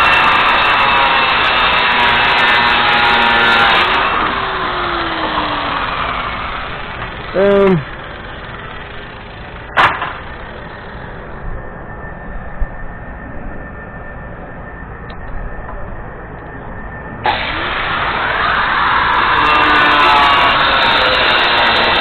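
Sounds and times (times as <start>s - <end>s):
steady rumbling background: 4.3s - 19.3s
sharp metal bang: 9.7s - 10.4s.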